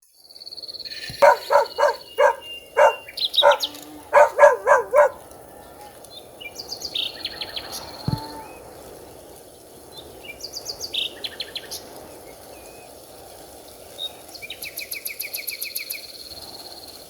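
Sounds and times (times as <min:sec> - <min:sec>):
bird chirping: 0:01.1 - 0:05.2
bird repeated pitched calls: 0:01.2 - 0:05.2.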